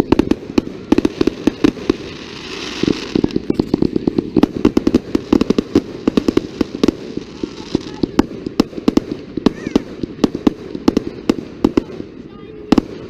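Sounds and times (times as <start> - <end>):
fireworks bangs: 0.0 - 13.0
hissing crackle: 0.0 - 13.0.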